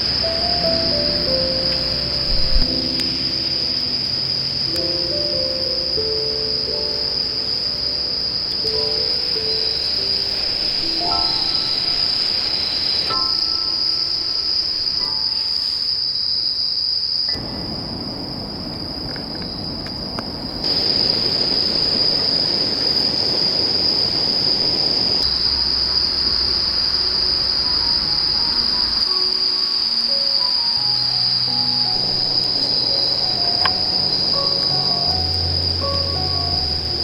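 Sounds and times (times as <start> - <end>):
low rushing noise: 0.0 - 16.4, 20.5 - 37.0
crickets chirring: 0.0 - 37.0.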